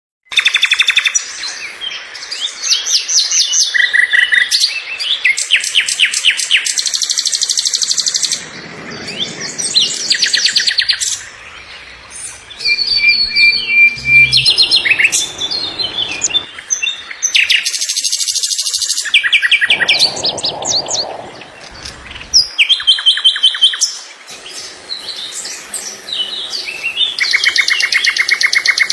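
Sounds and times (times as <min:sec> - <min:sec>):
songbird singing trills: 0:06.6 - 0:23.8.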